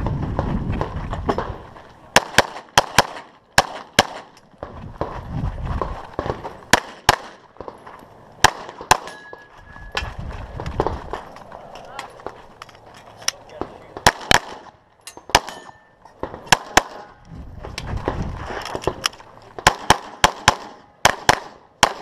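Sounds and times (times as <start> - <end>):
pistol firing rapid shots: 2.2 - 4.3, 6.2 - 7.4, 8.4 - 9.2, 14.0 - 14.7, 16.2 - 17.1, 19.6 - 22.0.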